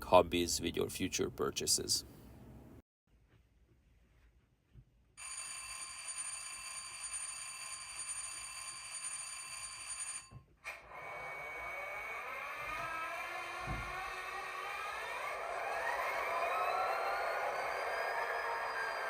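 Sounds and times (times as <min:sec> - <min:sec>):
diesel engine with rising whine: 0:10.8 - 0:19.0.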